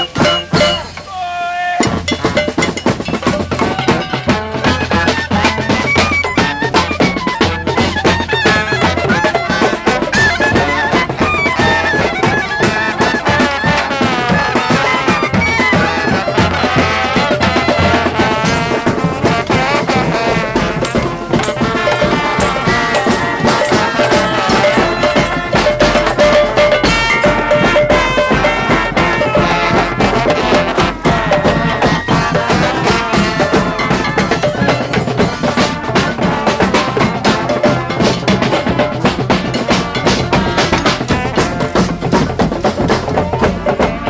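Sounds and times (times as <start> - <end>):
horns playing a tune: 0.0 - 44.0
steady drumming: 0.0 - 44.0.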